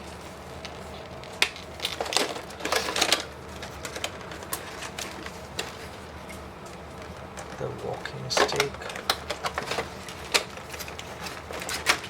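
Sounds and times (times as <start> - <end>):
packaging rustling: 0.6 - 12.0
plastic accessories clicking: 8.2 - 12.0.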